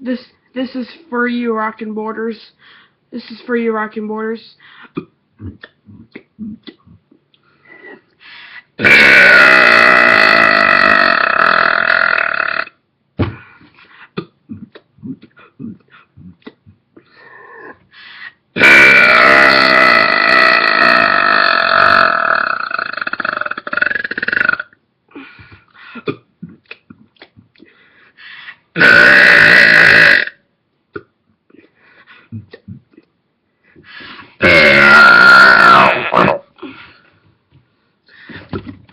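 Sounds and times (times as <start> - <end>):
faint mouth and throat sounds: 4.9 - 8.1, 13.2 - 17.8, 25.5 - 27.8, 30.9 - 33.2
person belching: 8.8 - 12.8, 14.2 - 16.7, 18.6 - 24.8, 28.8 - 30.4, 34.4 - 36.5.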